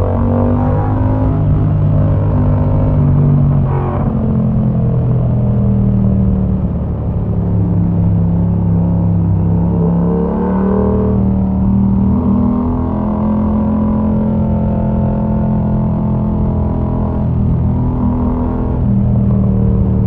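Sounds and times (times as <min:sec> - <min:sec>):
motorcycle engine through open exhaust: 0:00.0 - 0:20.0.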